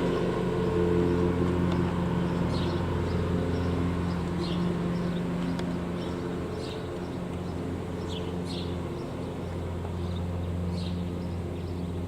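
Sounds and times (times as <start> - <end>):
low mechanical hum: 0.0 - 12.0.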